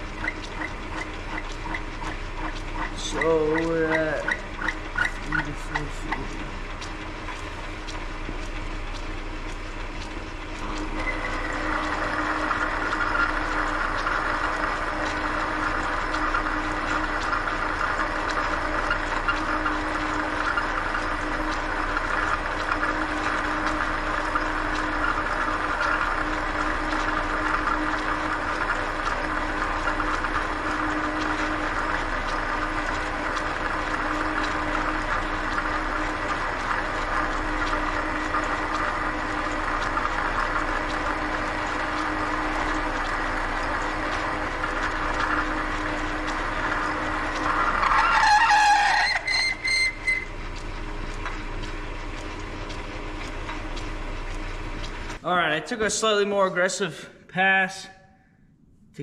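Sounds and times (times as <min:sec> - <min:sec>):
lathe tool cutting steel: 0:00.0 - 0:06.8, 0:10.6 - 0:53.1
lathe drive hum: 0:00.0 - 0:59.0.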